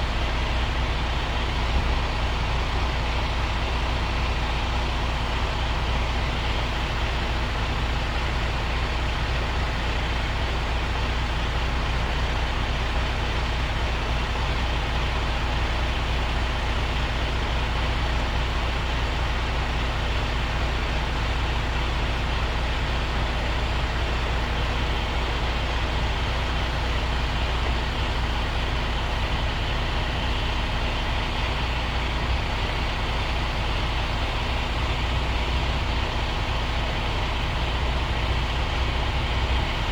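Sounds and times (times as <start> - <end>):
diesel truck engine humming: 11.8 - 39.9.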